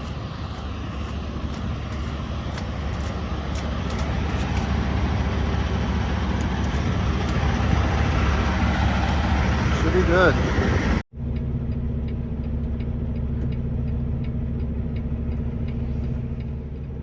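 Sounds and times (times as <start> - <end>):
tire chains clicking: 0.0 - 10.3
truck diesel engine pulling: 0.0 - 17.0.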